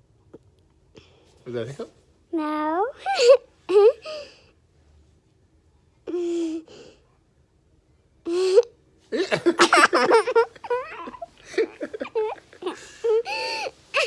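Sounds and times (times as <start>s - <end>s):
young child giggling: 9.2s - 14.0s.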